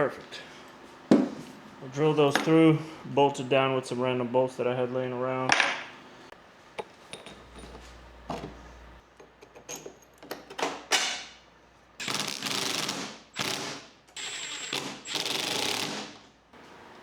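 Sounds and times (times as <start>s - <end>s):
loud mechanical bursts: 12.0s - 16.2s.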